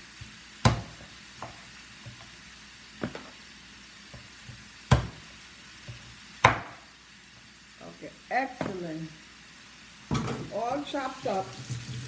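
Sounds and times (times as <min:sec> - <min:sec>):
faint sizzle from pot: 0:00.0 - 0:12.0
knife chopping on cutting board: 0:00.6 - 0:02.3, 0:03.0 - 0:03.4, 0:04.1 - 0:06.9.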